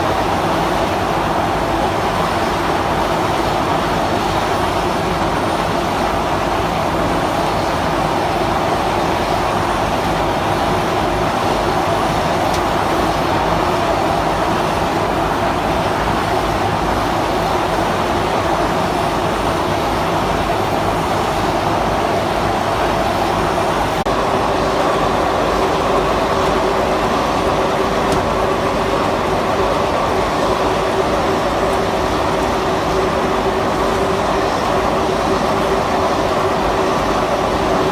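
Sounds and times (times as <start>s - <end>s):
backhoe diesel engine running: 20.1s - 34.4s.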